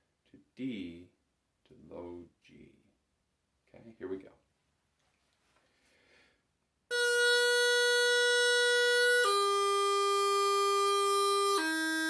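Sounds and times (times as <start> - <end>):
practice chanter playing: 6.9 - 12.0.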